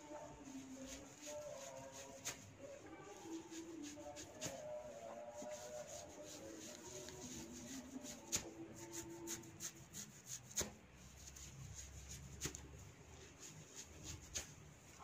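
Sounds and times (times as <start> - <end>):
hands rustling through hair: 0.3 - 15.0.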